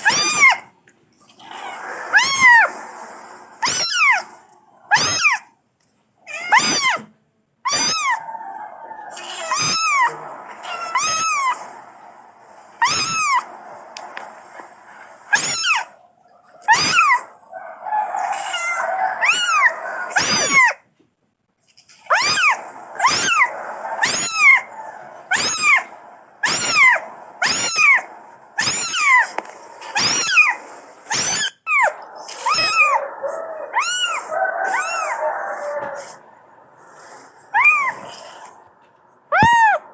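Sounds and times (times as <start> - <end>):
kitten meowing: 0.0 - 0.6, 1.4 - 2.8, 3.6 - 5.5, 6.3 - 7.1, 7.7 - 8.2, 9.2 - 11.7, 12.8 - 13.5, 15.3 - 15.9, 16.7 - 17.3, 18.2 - 20.8, 22.1 - 24.7, 25.3 - 29.3, 29.9 - 33.0, 33.7 - 35.2, 37.6 - 38.4, 39.3 - 39.8.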